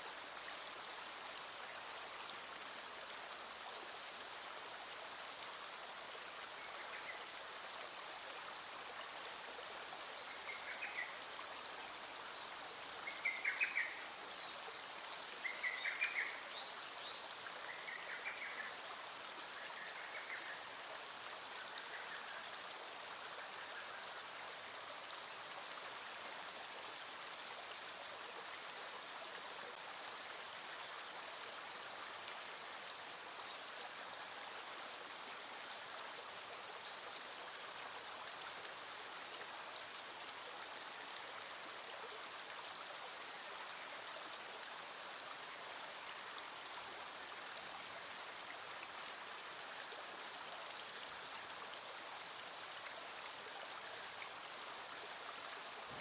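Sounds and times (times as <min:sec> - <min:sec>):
rain falling on water: 0:00.0 - 0:56.0
small stream flowing: 0:00.0 - 0:56.0.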